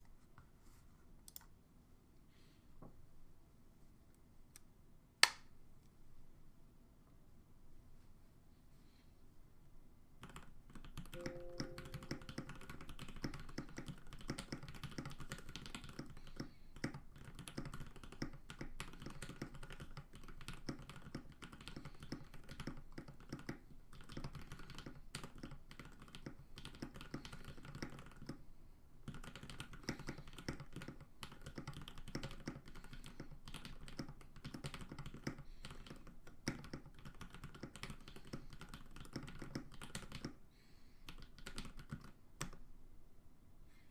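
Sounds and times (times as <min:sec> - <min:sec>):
mechanical keyboard typing: 0:10.2 - 0:28.4, 0:29.0 - 0:40.4, 0:41.1 - 0:42.6.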